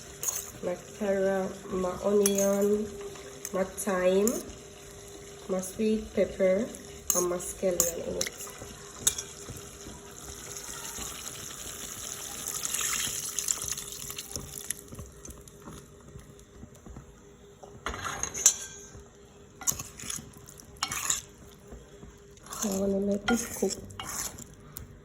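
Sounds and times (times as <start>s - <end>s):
pots and utensils clattering: 0.0s - 0.7s, 2.1s - 3.6s, 7.1s - 11.1s, 17.8s - 19.0s, 19.6s - 21.5s
water running: 0.0s - 16.2s.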